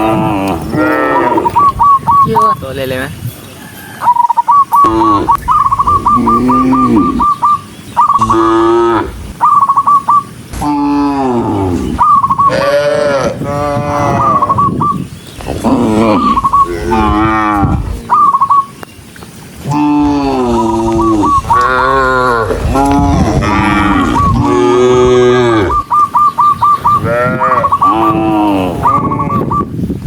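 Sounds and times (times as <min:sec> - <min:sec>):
cattle mooing: 0:00.0 - 0:01.6, 0:06.0 - 0:07.4, 0:08.2 - 0:09.2, 0:10.6 - 0:14.6, 0:15.5 - 0:18.2, 0:19.7 - 0:25.8, 0:27.0 - 0:29.5
high fast chirping: 0:04.0 - 0:08.5, 0:09.3 - 0:10.4, 0:18.0 - 0:18.8.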